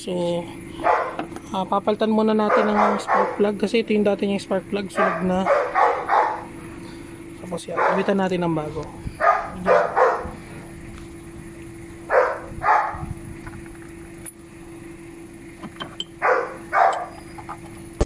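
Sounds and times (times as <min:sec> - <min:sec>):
faint steady hum: 0:00.0 - 0:18.0
dog barking: 0:00.8 - 0:01.2, 0:02.4 - 0:03.5, 0:04.9 - 0:06.5, 0:07.7 - 0:08.2, 0:09.2 - 0:10.4, 0:12.1 - 0:13.0, 0:16.2 - 0:17.1.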